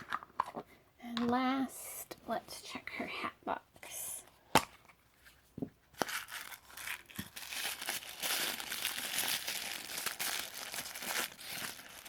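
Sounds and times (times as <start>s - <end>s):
plastic packaging crinkling: 6.0s - 12.0s.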